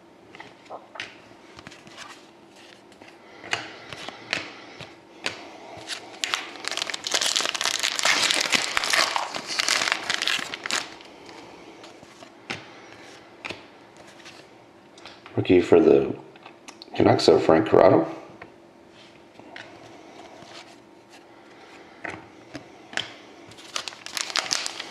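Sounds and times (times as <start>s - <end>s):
plastic wrapper crinkling: 5.9s - 12.2s, 23.5s - 24.9s.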